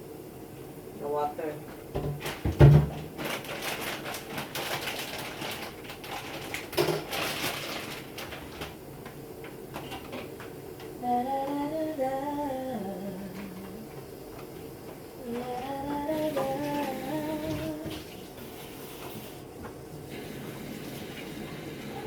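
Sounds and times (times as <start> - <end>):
person humming a tune: 11.0 - 13.9, 15.2 - 18.0.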